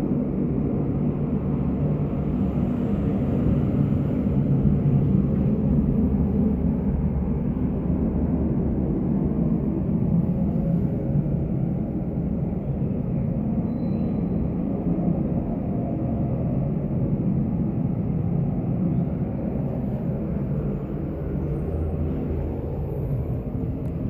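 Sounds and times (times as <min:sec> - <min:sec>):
faint droning hum: 0:00.0 - 0:24.0
low rumble: 0:00.0 - 0:24.0.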